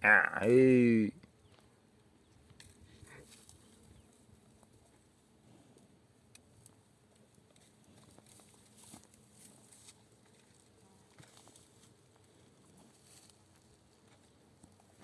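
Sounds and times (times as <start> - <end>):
soft rustles: 7.5 - 14.9.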